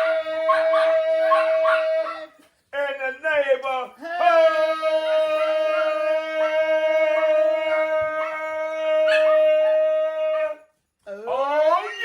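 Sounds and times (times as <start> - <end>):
dog yips: 0.5 - 2.2.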